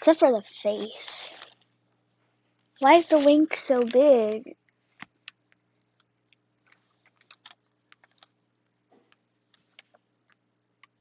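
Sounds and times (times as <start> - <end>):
foam toy clicking and crackling: 2.8 - 5.4.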